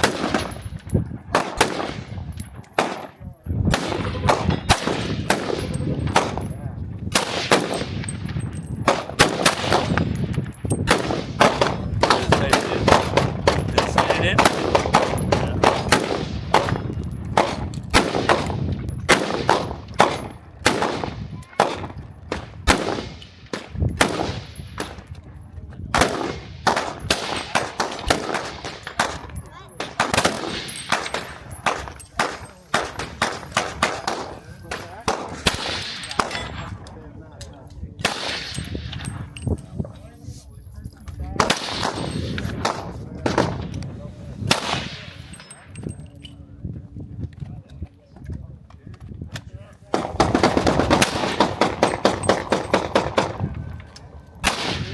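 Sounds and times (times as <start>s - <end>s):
gunshots: 0.0s - 25.2s, 25.9s - 36.7s, 38.0s - 39.6s, 41.4s - 43.7s, 49.9s - 53.6s, 54.4s - 54.9s.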